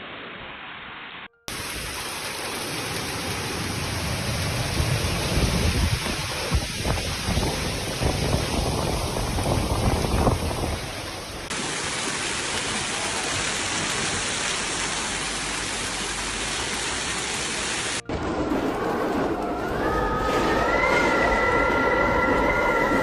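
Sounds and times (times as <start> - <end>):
storm hiss: 0.0 - 19.1
rising whine into held tone: 18.0 - 23.0.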